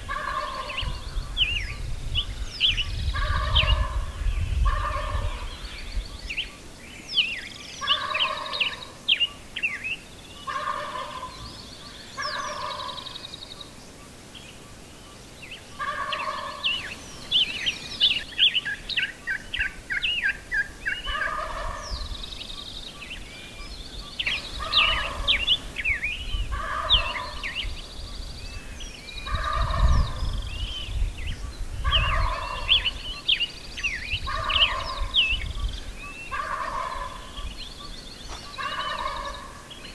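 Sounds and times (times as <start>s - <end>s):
turkeys gobbling: 0.1s - 0.8s, 3.2s - 4.0s, 4.7s - 5.4s, 7.8s - 8.9s, 10.5s - 11.4s, 12.2s - 13.1s, 15.8s - 16.6s, 20.6s - 21.9s, 24.6s - 25.5s, 26.5s - 27.5s, 29.3s - 30.2s, 31.8s - 32.9s, 34.3s - 35.1s, 36.3s - 37.4s, 38.3s - 39.6s.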